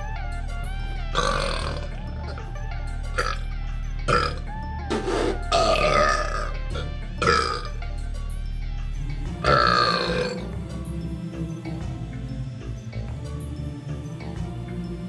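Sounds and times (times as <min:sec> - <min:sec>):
background music: 0:00.0 - 0:15.0
person burping: 0:01.2 - 0:02.0, 0:04.1 - 0:07.7, 0:09.4 - 0:10.5.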